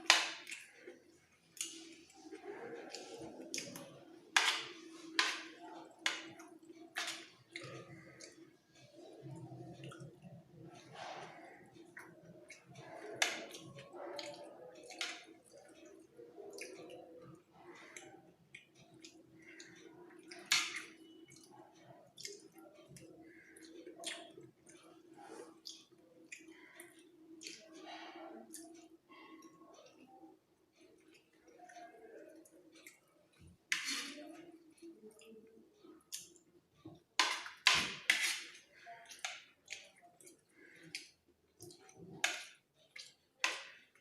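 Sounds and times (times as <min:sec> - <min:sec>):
mouth smacks and chewing: 0:00.4 - 0:27.8
spoon scraping a plate: 0:33.7 - 0:34.4, 0:37.7 - 0:38.6.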